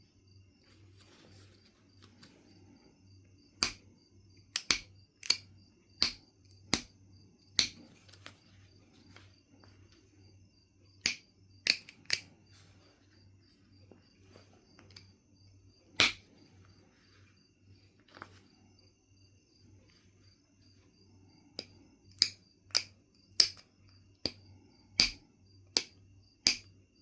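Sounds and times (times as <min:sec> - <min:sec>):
flint knapping clicks: 0:03.6 - 0:03.8, 0:04.5 - 0:06.9, 0:07.5 - 0:08.3, 0:11.0 - 0:12.4, 0:16.0 - 0:16.3, 0:21.6 - 0:24.4, 0:25.0 - 0:26.7.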